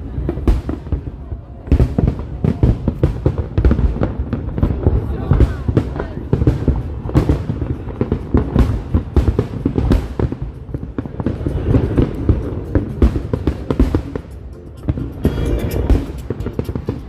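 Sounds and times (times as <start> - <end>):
fireworks bangs and crackles: 0.0 - 17.0
music playing: 9.5 - 17.0.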